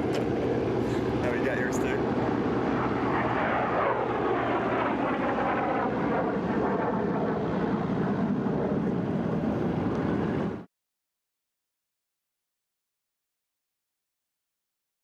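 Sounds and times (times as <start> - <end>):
propeller airplane flying past: 0.0 - 10.7.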